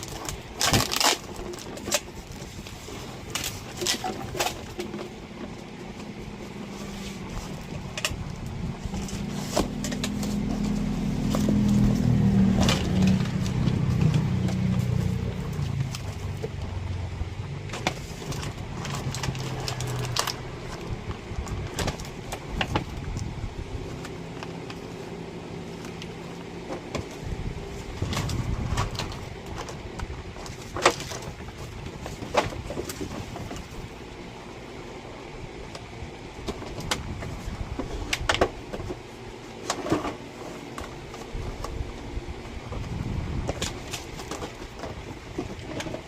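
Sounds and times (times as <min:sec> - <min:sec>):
vehicle engine passing by: 0:08.8 - 0:18.2.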